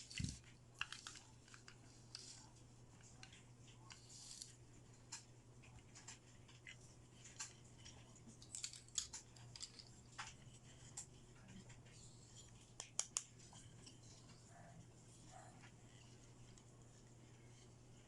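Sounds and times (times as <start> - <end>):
faint steady hum: 0.0 - 18.0
plastic toy pieces clicking: 8.4 - 10.3.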